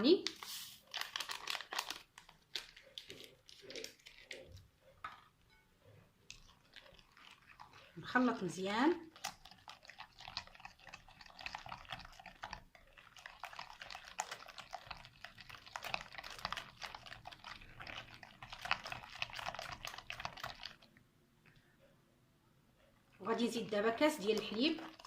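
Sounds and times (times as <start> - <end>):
batter beaten by hand in bowl: 3.0 - 20.9, 23.2 - 25.0.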